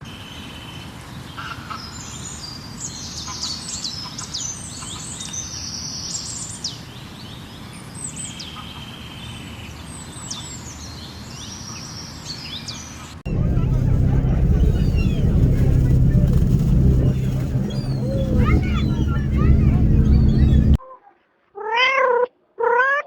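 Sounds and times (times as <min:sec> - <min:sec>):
low background rumble: 0:13.3 - 0:20.8.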